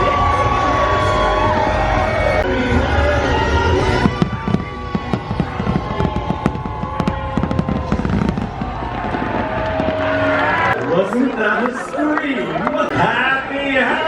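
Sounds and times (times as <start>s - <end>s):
fireworks bangs and crackles: 0.0s - 10.8s.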